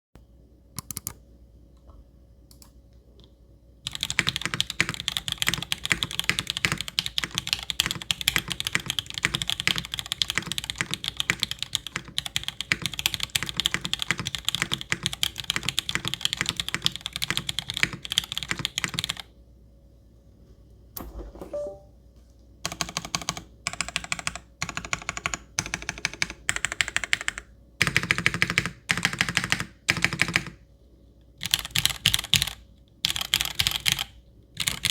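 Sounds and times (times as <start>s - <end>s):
mechanical keyboard typing: 0.8s - 1.2s, 3.9s - 19.3s, 22.6s - 30.6s, 31.4s - 34.9s.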